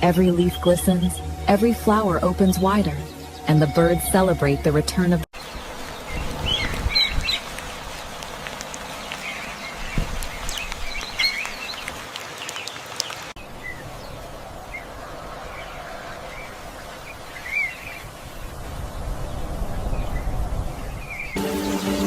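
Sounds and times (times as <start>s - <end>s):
birds chirping: 0.0s - 14.9s, 21.0s - 22.0s.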